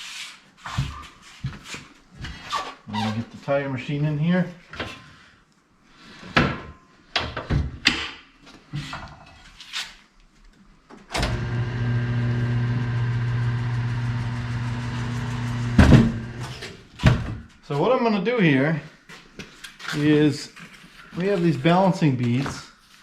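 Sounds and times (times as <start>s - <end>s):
electric turntable motor humming: 11.2s - 16.5s.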